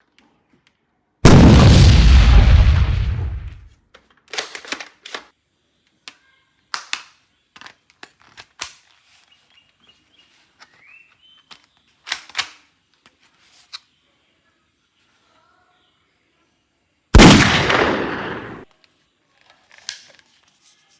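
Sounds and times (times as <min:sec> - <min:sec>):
plastic toy parts clicking: 0:03.9 - 0:05.3, 0:06.0 - 0:09.4, 0:10.5 - 0:13.8, 0:18.8 - 0:20.6.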